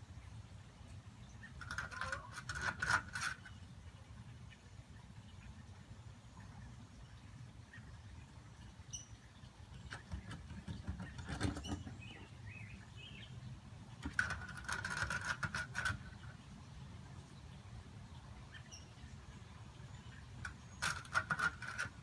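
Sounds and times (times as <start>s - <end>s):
small birds chirping: 0.9s - 22.0s
rustling and handling noise: 1.6s - 3.5s, 20.4s - 22.0s.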